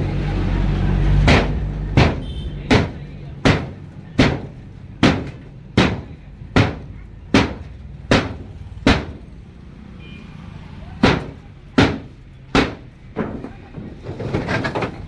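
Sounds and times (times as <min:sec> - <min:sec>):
hammer striking refrigerator: 0:01.2 - 0:09.3, 0:11.0 - 0:13.6.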